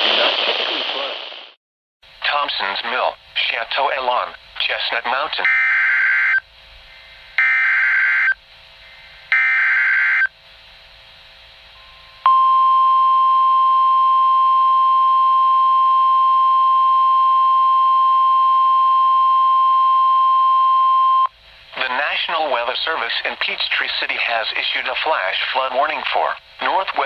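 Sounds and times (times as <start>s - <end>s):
steady warning alarm tone: 5.4s - 6.4s, 7.4s - 8.4s, 9.3s - 10.3s.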